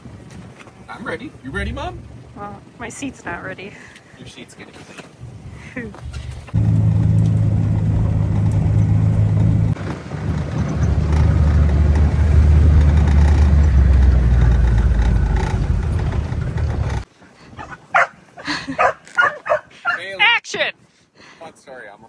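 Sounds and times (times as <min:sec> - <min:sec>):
farm vehicle engine running: 0:06.1 - 0:17.0.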